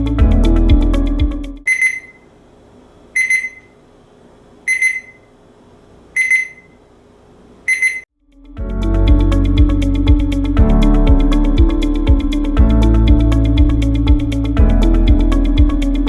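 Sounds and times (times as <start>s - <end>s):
thermometer alarm beeping: 1.6s - 2.3s, 3.2s - 3.8s, 4.7s - 5.3s, 6.2s - 6.8s, 7.7s - 8.1s.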